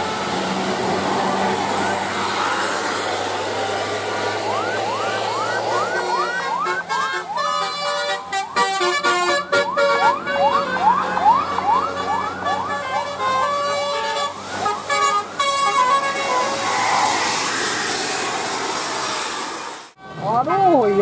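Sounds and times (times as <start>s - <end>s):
engine and road noise: 0.0s - 21.0s
rising siren-like whoops: 1.1s - 7.6s, 9.3s - 13.1s
bus horn tune: 5.6s - 11.1s, 11.7s - 17.0s.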